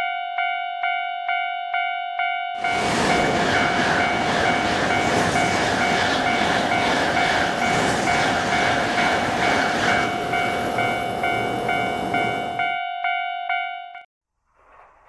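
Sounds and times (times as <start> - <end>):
level crossing warning bell: 0.0 - 14.1
high-speed train rushing past: 2.6 - 12.8.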